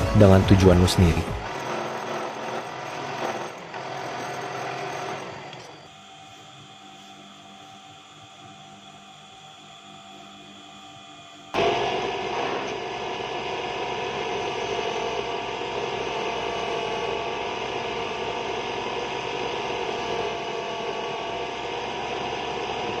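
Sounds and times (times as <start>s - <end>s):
power tool droning with whine: 0.0s - 23.0s.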